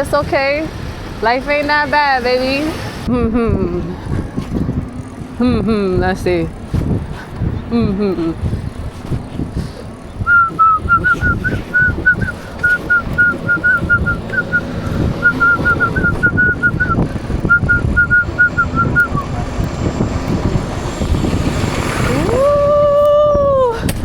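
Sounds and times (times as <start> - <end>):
road rumble: 0.0 - 24.0
wind buffeting: 0.0 - 24.0
high steady tone: 10.2 - 20.3.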